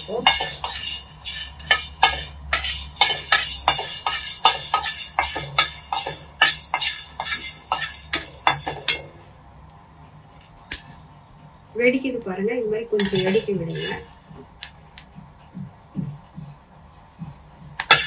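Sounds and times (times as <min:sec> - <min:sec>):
peppercorns popping in a hot pot: 0:00.0 - 0:09.0.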